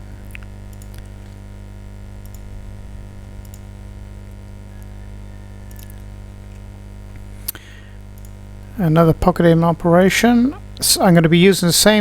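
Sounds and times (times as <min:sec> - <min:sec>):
electrical mains hum: 0:00.0 - 0:12.0
computer mouse clicks: 0:02.2 - 0:02.5, 0:03.4 - 0:03.7, 0:05.7 - 0:06.1, 0:08.2 - 0:08.4.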